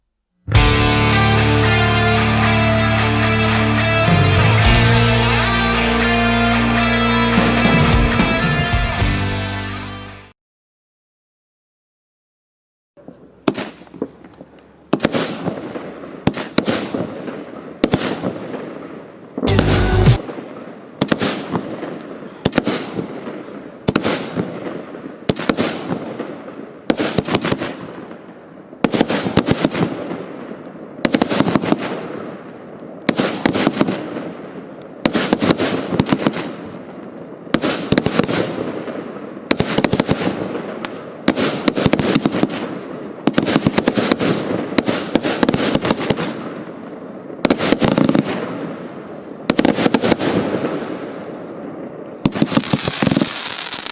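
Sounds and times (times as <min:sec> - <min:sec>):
firework volleys popping and banging: 0:13.0 - 0:53.9.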